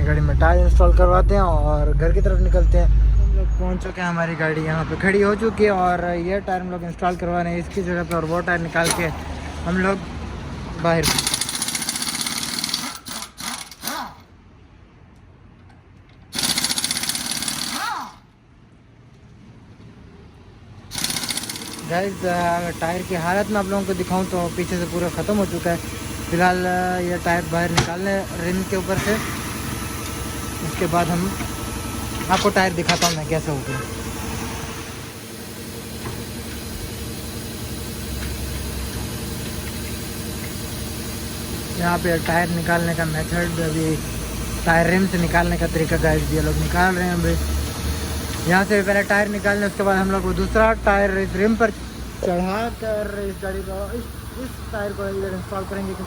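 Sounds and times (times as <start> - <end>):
motor running with low rumble: 0.0 - 4.1, 21.4 - 56.0
pneumatic impact wrench rattling: 8.1 - 9.2, 11.0 - 14.3, 16.2 - 18.3, 20.9 - 50.7.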